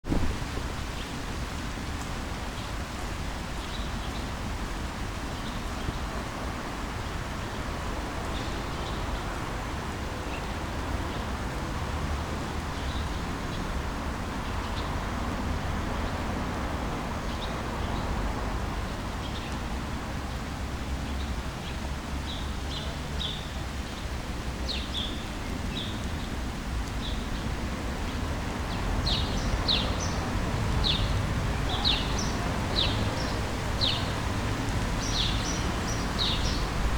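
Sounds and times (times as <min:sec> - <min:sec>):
low traffic rumble: 0:00.0 - 0:36.9
rain or wind hiss: 0:00.0 - 0:36.9
small birds chirping: 0:21.1 - 0:36.9.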